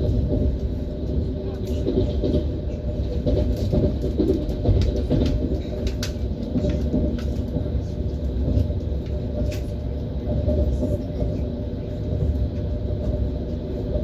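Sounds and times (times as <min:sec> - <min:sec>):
electric train rumbling: 0:00.0 - 0:14.0
wheels clicking on rails: 0:00.0 - 0:14.0.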